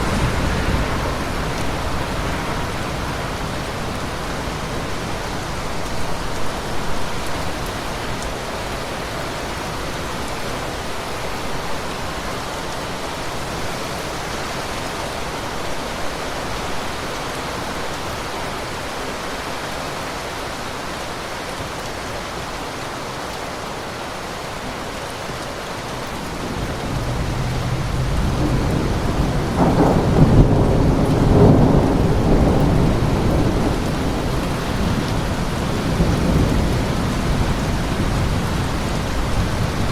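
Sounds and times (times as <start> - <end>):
thunder rumbling: 0.0 - 6.8, 26.2 - 39.9
steady rain falling: 0.0 - 39.9.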